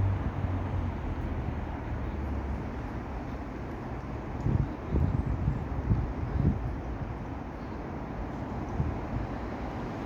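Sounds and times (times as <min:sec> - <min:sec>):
wind buffeting microphone: 0:04.2 - 0:07.5, 0:08.2 - 0:10.0.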